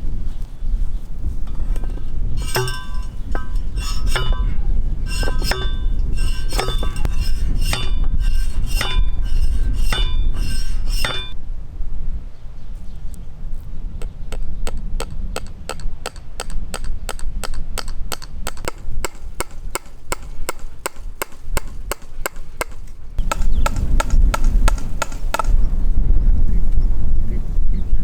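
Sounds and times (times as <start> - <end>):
hammer striking wooden pole: 1.5 - 11.4, 14.0 - 25.6.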